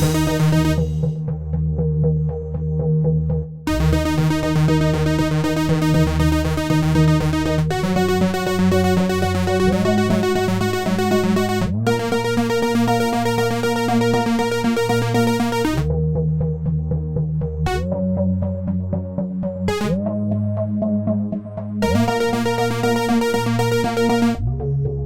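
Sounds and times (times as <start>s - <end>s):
electronic synthesizer music: 0.0s - 1.2s, 3.7s - 24.6s.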